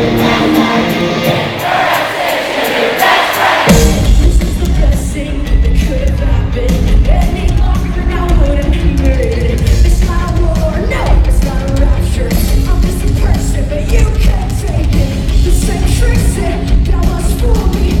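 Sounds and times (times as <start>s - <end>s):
distorted guitars: 0.0s - 18.0s
drums: 0.0s - 18.0s
bass: 3.7s - 18.0s
person singing: 3.7s - 18.0s.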